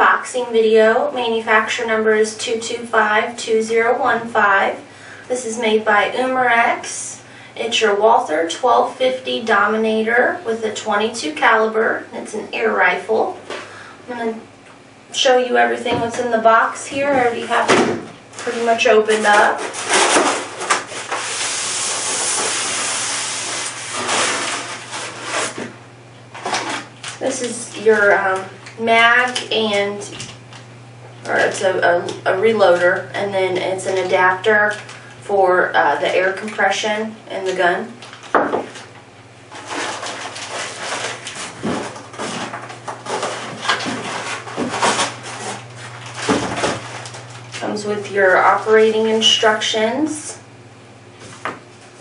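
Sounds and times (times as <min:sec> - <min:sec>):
low electrical hum: 0:00.0 - 0:52.0
box packaging rustling: 0:39.5 - 0:47.4.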